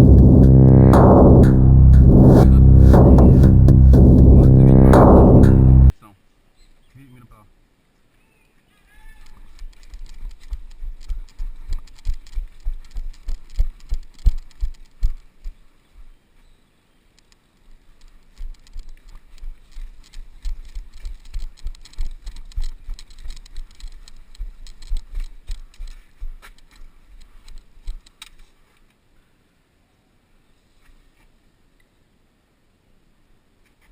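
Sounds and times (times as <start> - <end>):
low thumps: 0.0 - 5.9.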